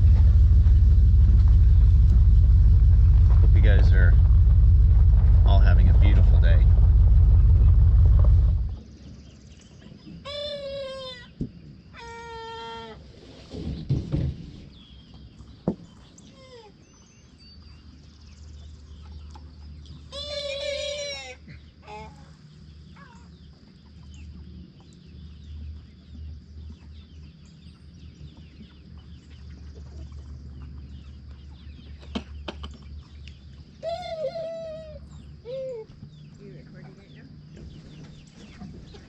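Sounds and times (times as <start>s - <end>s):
low hum: 0.0s - 9.0s.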